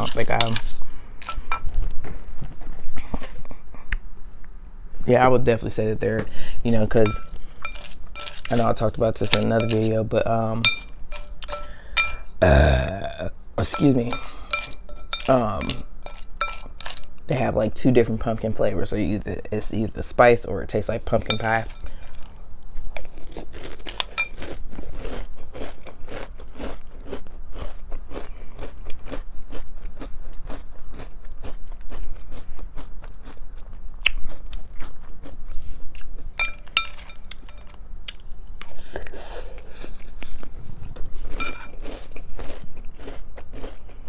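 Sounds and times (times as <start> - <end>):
chewing crunchy cereal: 6.7 - 17.2, 21.1 - 44.0
spoon clinking against bowl: 6.9 - 10.0, 10.6 - 12.4, 13.6 - 17.0, 21.1 - 22.0, 36.4 - 37.7, 41.4 - 41.7.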